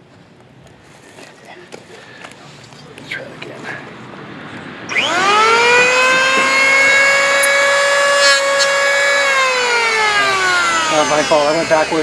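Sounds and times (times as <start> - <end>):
electric planer motor whining: 4.9 - 12.0.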